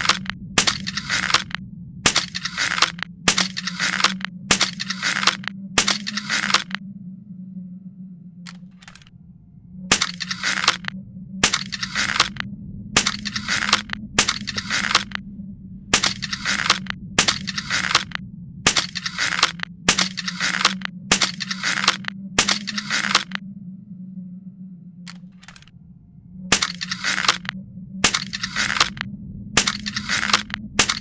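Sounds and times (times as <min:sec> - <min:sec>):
crossbow strokes with clicks: 0:00.0 - 0:06.8, 0:09.9 - 0:12.4, 0:13.0 - 0:15.2, 0:16.0 - 0:23.4, 0:26.5 - 0:29.0, 0:29.6 - 0:31.0
low hum: 0:00.0 - 0:31.0.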